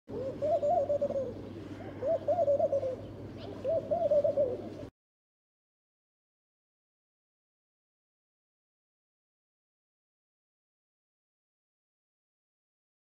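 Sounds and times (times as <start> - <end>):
dove cooing: 0.1 - 4.9.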